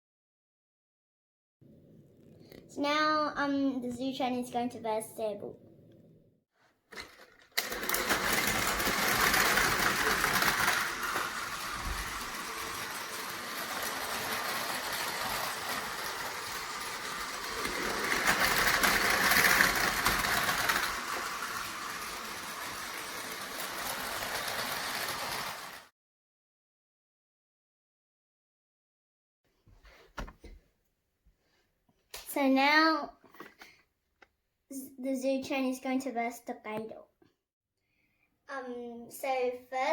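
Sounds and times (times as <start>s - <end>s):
toy train motors whirring: 6.9s - 25.9s
toy train wheels rattling: 6.9s - 25.9s.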